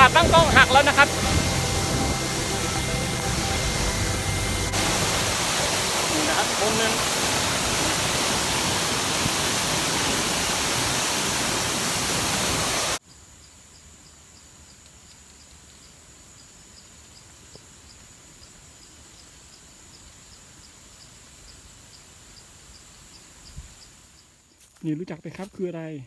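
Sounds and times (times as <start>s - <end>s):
waterfall roar: 0.0s - 13.0s
insect buzz: 0.0s - 24.8s
insect chirp: 0.0s - 25.4s.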